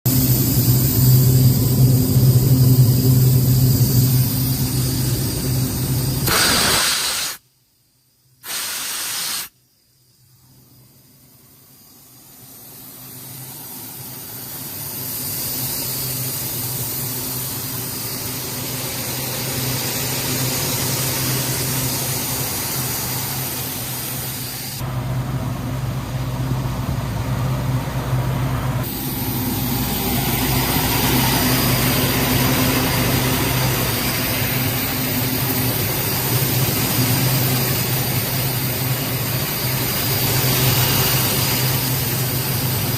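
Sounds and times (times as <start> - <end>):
diesel engine running: 0.1 - 6.7, 12.0 - 42.9
rushing hiss: 6.1 - 7.5, 8.4 - 9.7, 11.7 - 24.8.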